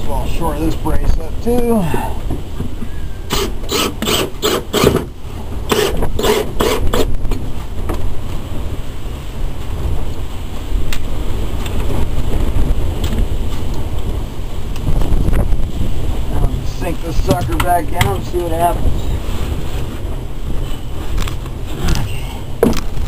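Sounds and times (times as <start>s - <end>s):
wind rumble on microphone: 0.0s - 23.0s
rasping hand tool strokes: 3.3s - 5.0s.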